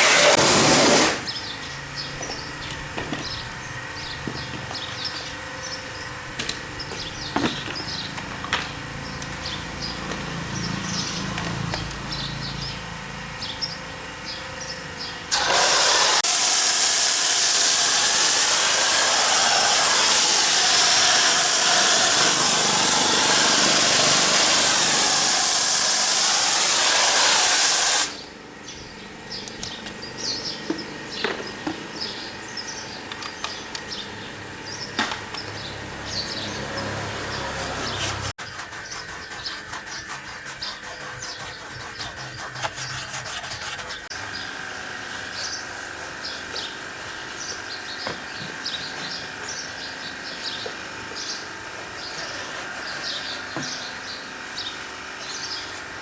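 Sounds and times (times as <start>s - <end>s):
pressure washer jet hissing: 0.0s - 1.4s, 15.3s - 28.2s
birds chirping: 1.2s - 15.3s, 28.2s - 55.9s.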